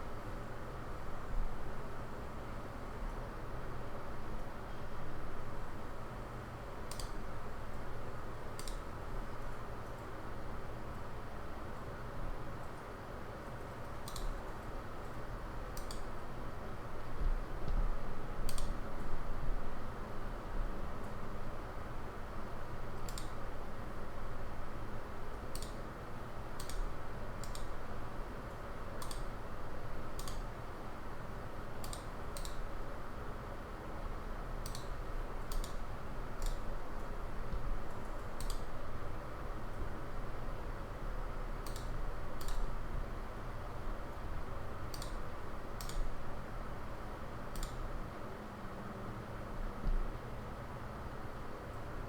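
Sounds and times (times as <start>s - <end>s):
computer mouse clicking: 6.9s - 7.2s, 8.6s - 8.8s, 14.0s - 15.2s, 15.8s - 16.1s, 18.5s - 18.7s, 23.0s - 23.4s, 25.5s - 25.8s, 26.6s - 27.7s, 29.0s - 29.3s, 30.2s - 30.4s, 31.8s - 32.6s, 34.6s - 35.8s, 36.4s - 37.1s, 37.9s - 38.7s, 41.6s - 42.7s, 44.9s - 45.2s, 45.8s - 46.1s, 47.5s - 47.8s.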